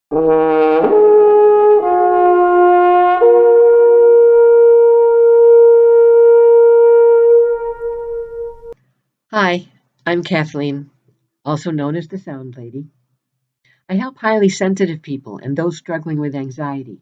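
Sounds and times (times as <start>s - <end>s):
wind instrument playing sustained notes: 0.1s - 8.8s.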